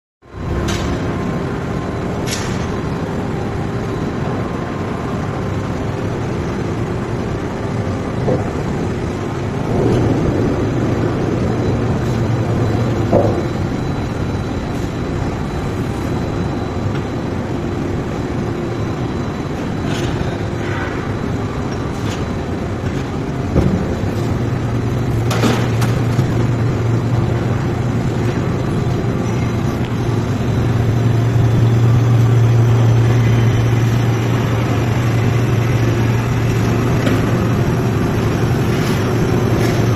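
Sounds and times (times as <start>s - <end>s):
machinery running with low hum: 0.2s - 39.9s.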